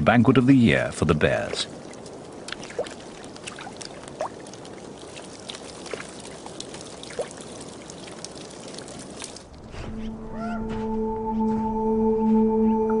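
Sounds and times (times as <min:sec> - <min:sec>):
water trickling and pouring: 0:01.2 - 0:09.7
small wet clicks: 0:01.4 - 0:09.6.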